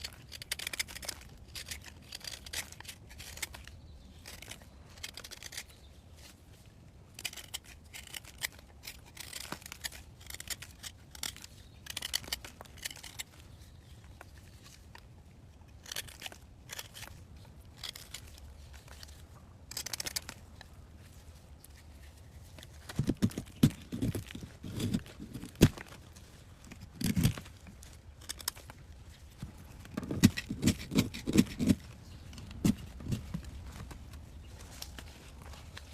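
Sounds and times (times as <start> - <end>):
material snipping and tearing: 0.0 - 5.7, 7.2 - 13.4, 15.7 - 19.1, 19.7 - 20.5, 22.5 - 26.0, 26.8 - 28.8, 29.4 - 33.9.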